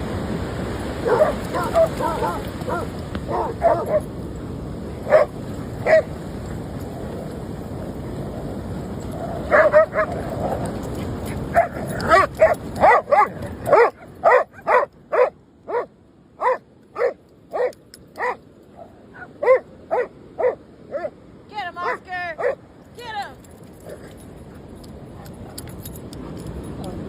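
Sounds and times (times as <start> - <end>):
dog barking: 1.0 - 4.0, 5.1 - 6.1, 9.5 - 10.1, 11.5 - 18.4, 19.2 - 21.1, 21.8 - 22.6.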